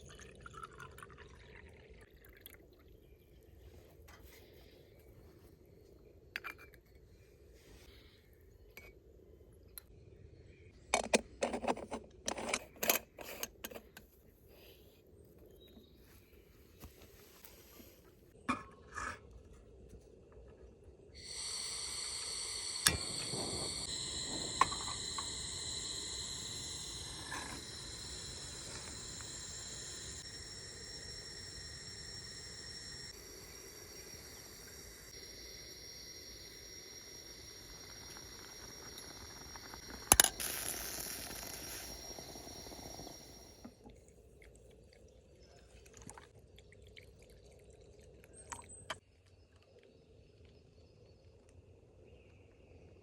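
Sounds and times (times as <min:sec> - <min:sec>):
moka pot hissing and whistling: 0:21.2 - 0:43.9.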